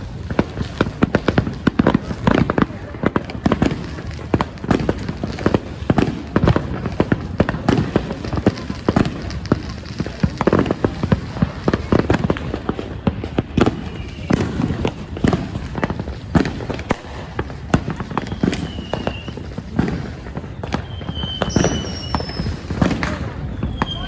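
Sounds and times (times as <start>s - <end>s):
fireworks bangs and pops: 0.0s - 24.0s
firework whistles: 10.5s - 24.0s.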